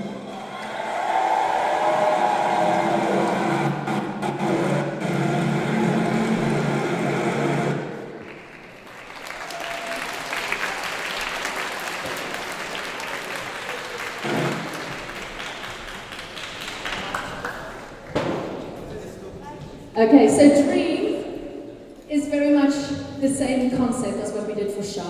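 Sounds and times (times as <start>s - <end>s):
audience applause: 0.0s - 6.0s, 8.0s - 18.3s
music: 0.0s - 8.3s.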